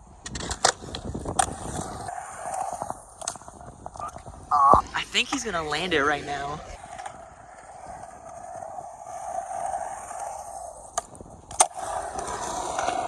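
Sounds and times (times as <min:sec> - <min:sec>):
skateboard grinding on a ledge: 0:05.2 - 0:13.0.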